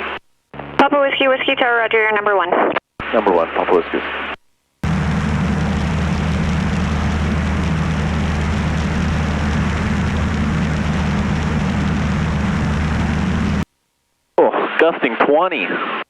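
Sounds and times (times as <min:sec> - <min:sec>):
aircraft engine and propeller drone: 0:04.8 - 0:13.6.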